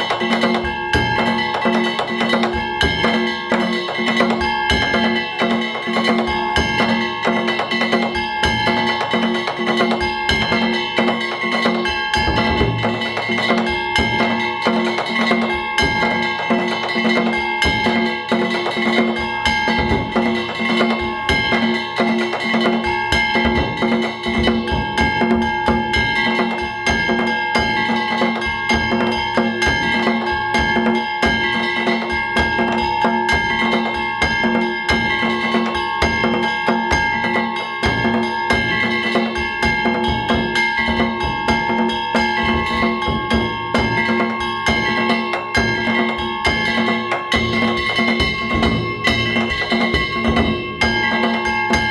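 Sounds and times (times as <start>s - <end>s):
small hand gongs ringing: 0.0s - 51.9s
taiko drums beaten fast: 0.0s - 51.9s.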